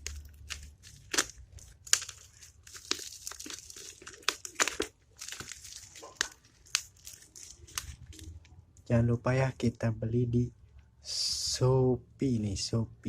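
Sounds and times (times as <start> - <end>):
plastic packaging crinkling and tearing: 0.0 - 8.5.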